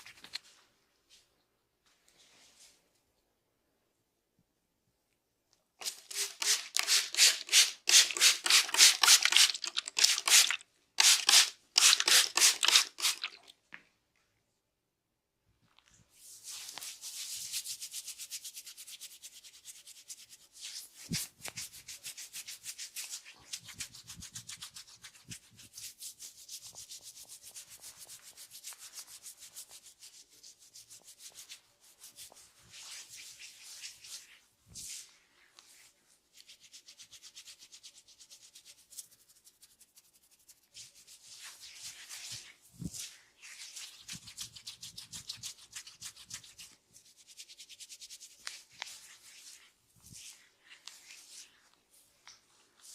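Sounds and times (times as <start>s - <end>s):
fingers rubbing hair and scalp: 16.2s - 52.9s.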